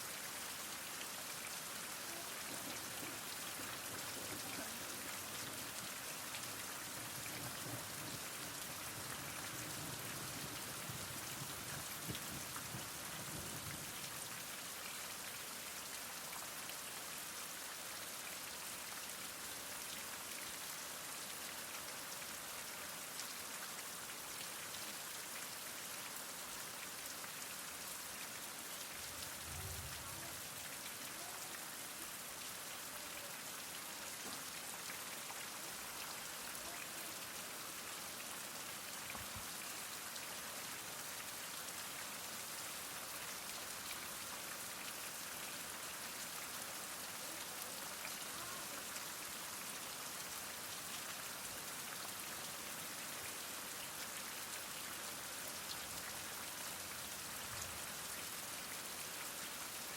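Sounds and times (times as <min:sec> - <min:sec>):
heavy rain falling: 0:00.0 - 0:14.5, 0:27.8 - 0:41.8.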